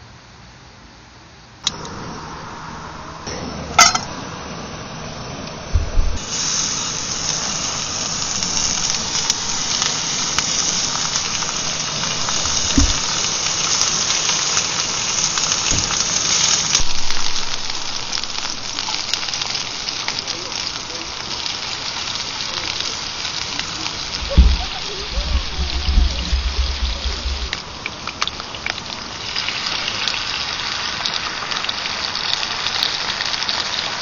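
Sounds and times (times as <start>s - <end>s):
food sizzling in a hot pan: 1.7s - 4.9s, 6.2s - 34.0s
sharp metal clink: 3.8s - 4.1s
dull knocks: 12.4s - 13.1s, 24.2s - 27.6s.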